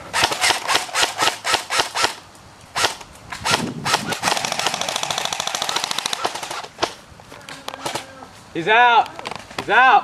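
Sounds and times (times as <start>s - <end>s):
airsoft gun firing: 0.1s - 2.2s, 2.8s - 7.0s.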